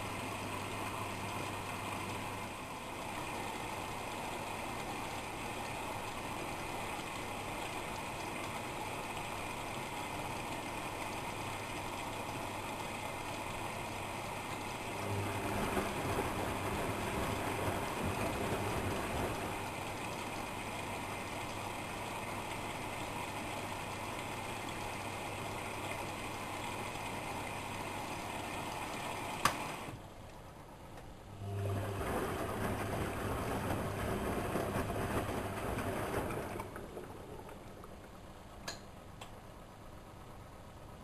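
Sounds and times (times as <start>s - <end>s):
washing machine drum turning: 15.0s - 20.4s, 31.7s - 38.9s.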